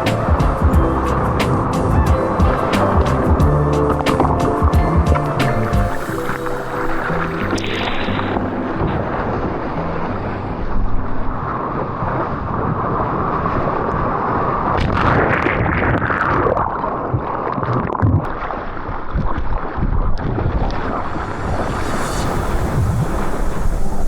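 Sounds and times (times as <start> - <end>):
deep rumble: 0.0 - 13.2, 18.2 - 24.0
surf and rushing water: 0.0 - 24.0
wind buffeting microphone: 0.0 - 24.0.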